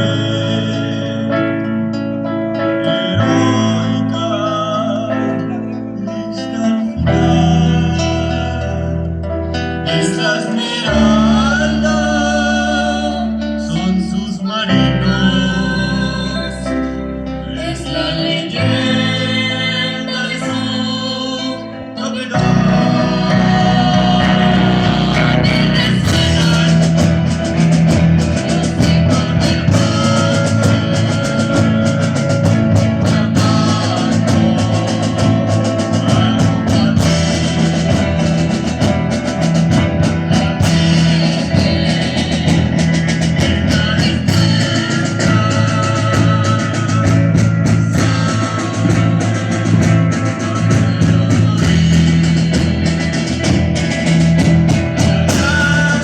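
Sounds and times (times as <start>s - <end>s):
person singing: 0.0s - 56.0s
rock music: 0.0s - 56.0s.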